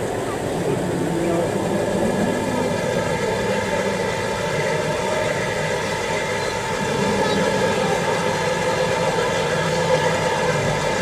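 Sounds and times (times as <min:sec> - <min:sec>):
model motor humming: 0:00.0 - 0:11.0.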